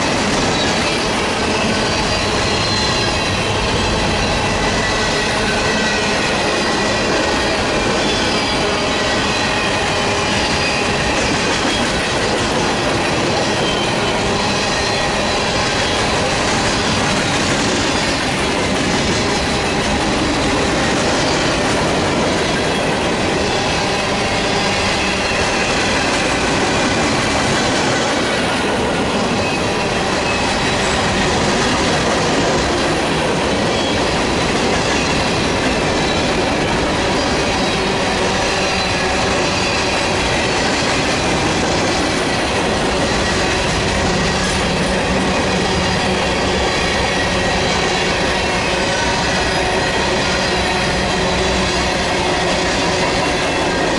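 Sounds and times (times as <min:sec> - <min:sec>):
train wheels rumbling on rail: 0:00.0 - 0:53.9
wheels squealing: 0:00.4 - 0:12.3.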